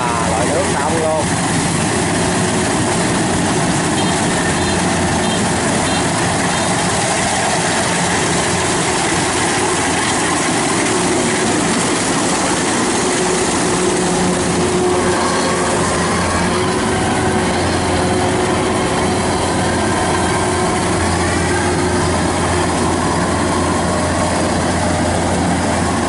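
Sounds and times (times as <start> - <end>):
combine harvester running: 0.0 - 26.0.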